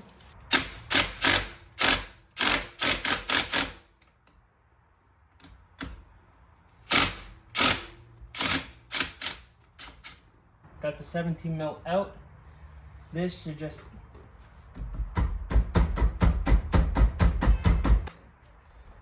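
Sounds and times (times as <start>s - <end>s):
socket ratchet clicking: 0.5s - 3.9s, 6.9s - 10.2s.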